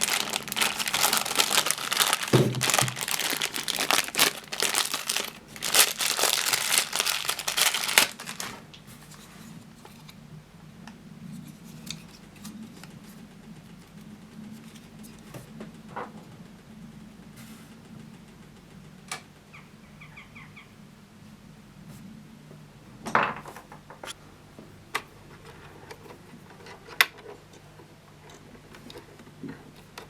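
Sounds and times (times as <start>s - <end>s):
crinkling and rustling: 0.0s - 10.2s.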